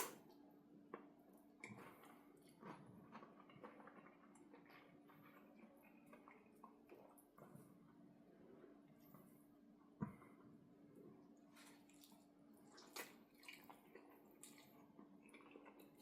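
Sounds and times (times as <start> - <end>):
faint steady hum: 0.0 - 16.0
person chewing: 1.6 - 7.2, 11.6 - 16.0.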